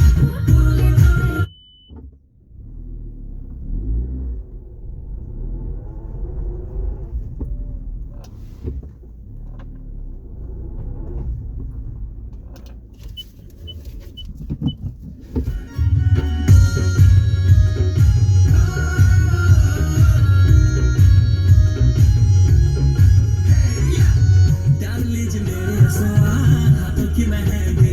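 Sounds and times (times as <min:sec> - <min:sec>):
low steady rumble: 0:00.0 - 0:27.9
short high beeps: 0:01.4 - 0:02.0.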